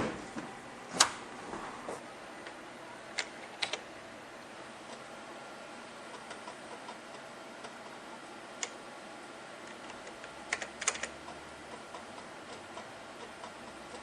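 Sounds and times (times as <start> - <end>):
keyboard key clicks: 9.7 - 11.1.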